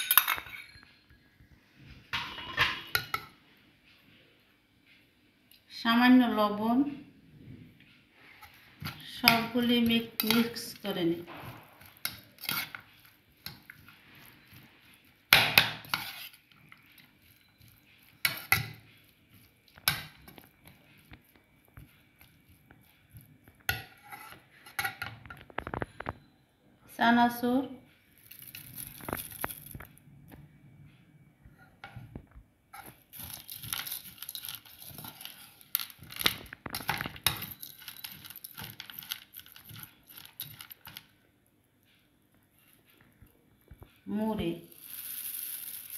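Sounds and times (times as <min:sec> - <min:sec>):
spoon scraping a bowl: 0:08.2 - 0:26.2, 0:32.8 - 0:41.0
crunchy snack rattling into bowl: 0:33.2 - 0:41.0.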